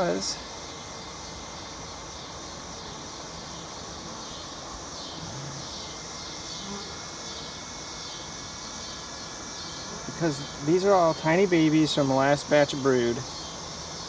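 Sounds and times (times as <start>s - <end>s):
high-pitched insect drone: 0.0s - 14.0s
honey bees buzzing: 0.0s - 14.0s.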